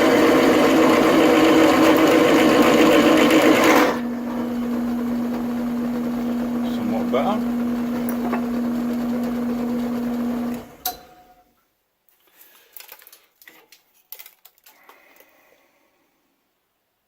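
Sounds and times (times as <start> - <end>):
drill press motor humming: 0.0 - 11.2.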